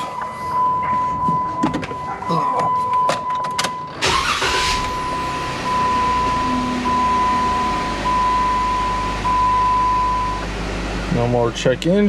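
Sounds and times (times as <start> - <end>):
electronic beep: 4.6 - 10.4.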